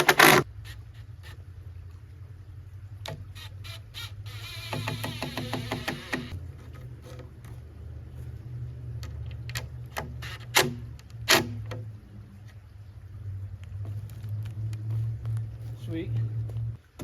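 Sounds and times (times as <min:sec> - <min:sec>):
low hum: 0:00.4 - 0:17.0
knocks on wooden boards: 0:04.7 - 0:06.3.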